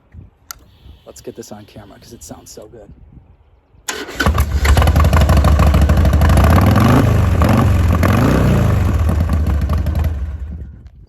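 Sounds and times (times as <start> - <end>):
motorcycle throttle blips: 3.9 - 11.0
motorcycle engine running: 4.1 - 10.8.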